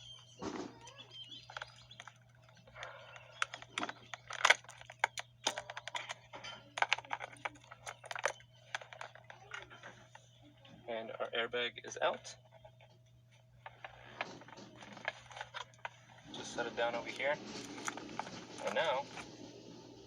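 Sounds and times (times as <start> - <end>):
plastic and metal clicks: 1.3 - 10.2, 13.6 - 16.0, 17.0 - 19.3.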